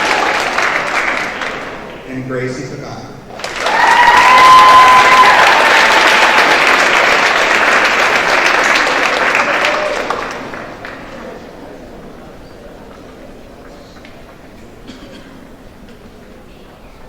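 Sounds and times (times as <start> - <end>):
high held cheer: 0.0 - 1.9, 3.3 - 10.8
audience applauding: 0.0 - 2.3, 3.3 - 12.0.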